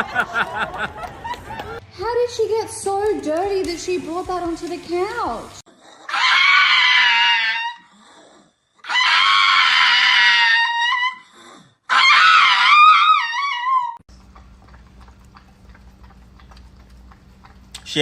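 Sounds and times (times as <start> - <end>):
dog yowling: 6.1 - 7.9, 8.8 - 11.3, 11.9 - 14.0.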